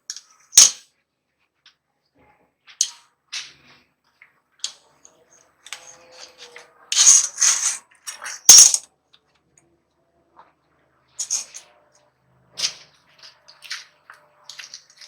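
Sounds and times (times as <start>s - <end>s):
scraping on saw blade: 5.7s - 7.8s
metal tool clink: 8.5s - 8.8s.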